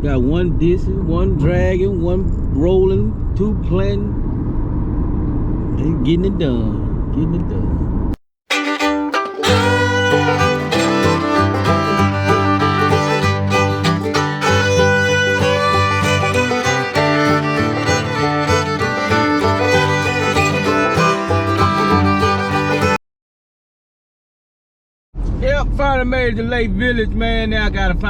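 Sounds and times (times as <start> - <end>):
upbeat bluegrass tune: 8.5 - 23.0.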